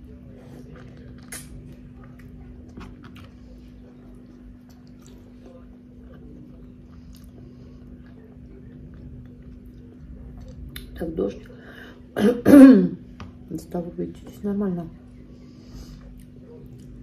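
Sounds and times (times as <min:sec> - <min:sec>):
steady low hum: 0:00.0 - 0:17.0
person chewing: 0:00.4 - 0:10.9, 0:15.9 - 0:17.0
mouth clicks and smacks: 0:01.2 - 0:01.6.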